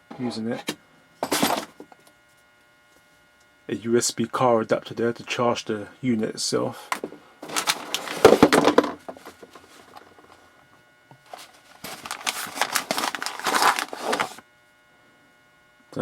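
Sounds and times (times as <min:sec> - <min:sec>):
plastic packaging crinkling: 0:07.4 - 0:10.4, 0:11.3 - 0:14.4.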